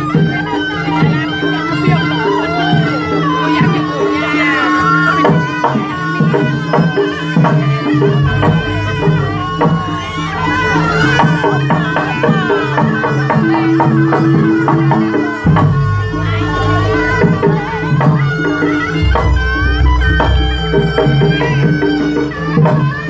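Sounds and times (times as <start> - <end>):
held pitched tones: 4.3 - 12.8, 14.1 - 22.6
drum strokes: 5.2 - 23.0
high sliding melody: 7.7 - 12.8, 14.2 - 23.0
deep low tone: 18.9 - 21.2.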